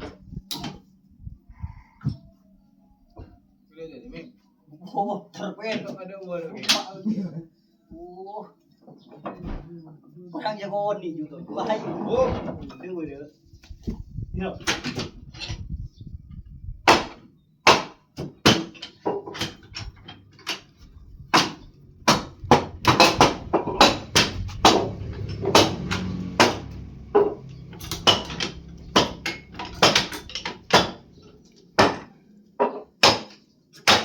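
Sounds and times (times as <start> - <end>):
sharp knocks and clanks: 16.9 - 34.0
low machine rumble: 20.9 - 30.4.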